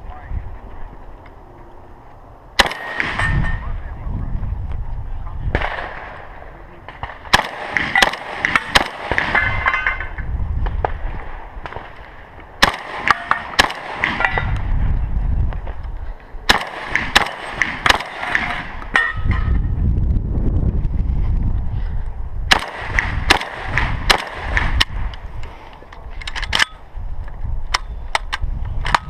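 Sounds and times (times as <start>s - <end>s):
rumbling movement noise: 0.0s - 29.0s
gunshots: 2.6s - 3.7s, 5.5s - 10.1s, 10.8s - 14.5s, 16.5s - 19.2s, 22.5s - 25.1s.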